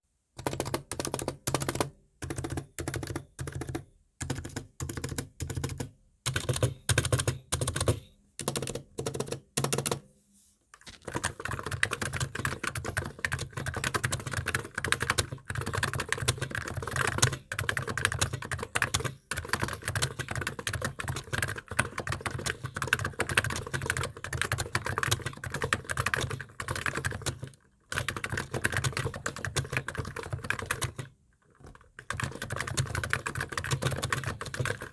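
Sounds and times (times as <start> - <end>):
keyboard typing: 0.4 - 10.1, 10.8 - 34.9.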